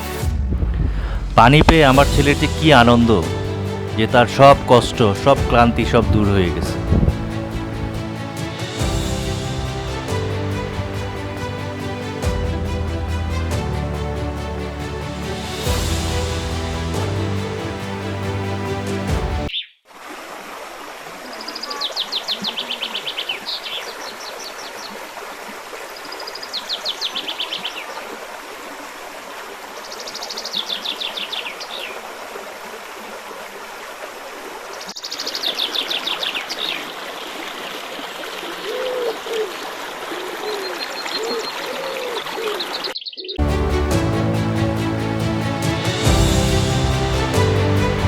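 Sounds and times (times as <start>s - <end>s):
stream running: 1.0s - 48.0s
lower bird calls: 34.9s - 43.4s.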